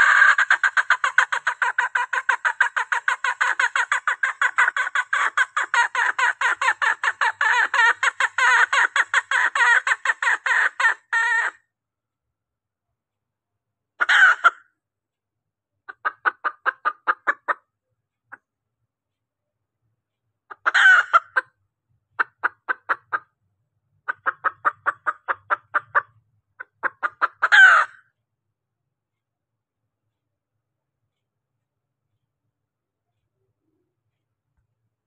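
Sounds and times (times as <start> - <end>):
hen clucking: 0.0 - 11.6, 14.0 - 14.6, 15.9 - 17.6, 20.5 - 21.5, 22.2 - 23.3, 24.1 - 28.0
hen squawking loudly: 0.0 - 11.6, 14.0 - 14.6, 20.5 - 21.4, 26.6 - 28.0.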